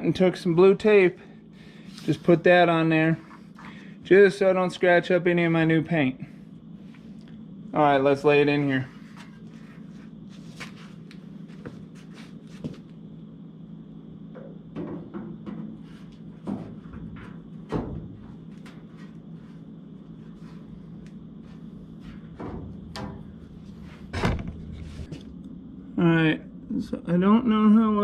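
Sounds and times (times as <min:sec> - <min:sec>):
sheet metal panel knocks and clunks: 0:24.1 - 0:25.1.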